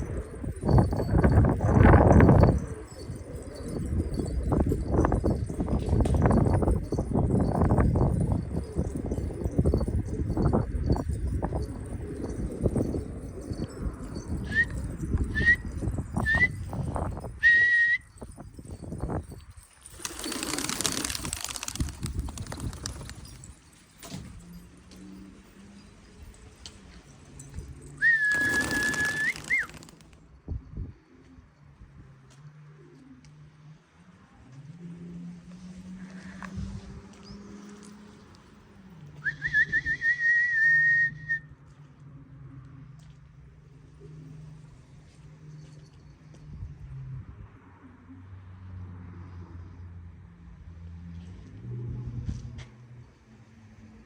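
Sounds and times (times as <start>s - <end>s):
person whistling: 14.5s - 15.6s, 16.2s - 16.6s, 17.4s - 18.1s, 28.0s - 29.7s, 39.2s - 41.5s
rustling: 28.2s - 30.2s.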